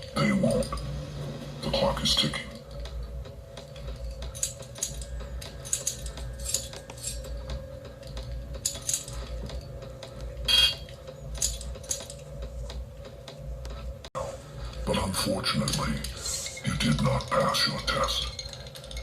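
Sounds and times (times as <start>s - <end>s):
steady hum: 0.0s - 19.0s
keys clinking in locks: 2.3s - 12.5s, 15.5s - 19.0s.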